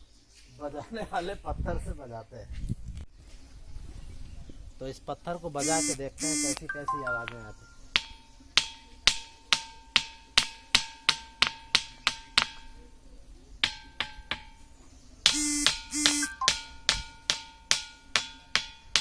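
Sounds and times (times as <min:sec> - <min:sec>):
ringing rock struck with stone: 0:08.0 - 0:12.8
short loud pitched sounds: 0:15.4 - 0:16.4.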